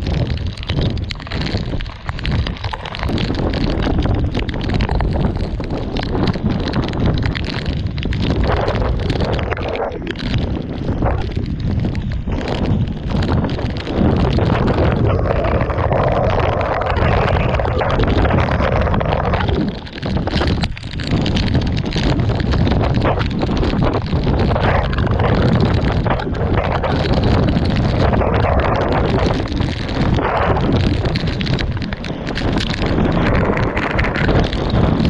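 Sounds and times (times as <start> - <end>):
wind buffeting microphone: 0.0 - 35.0.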